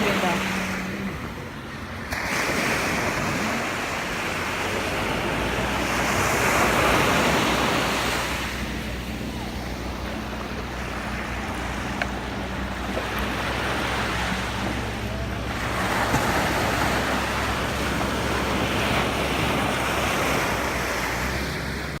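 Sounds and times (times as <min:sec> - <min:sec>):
sea waves breaking on beach: 0:00.0 - 0:22.0.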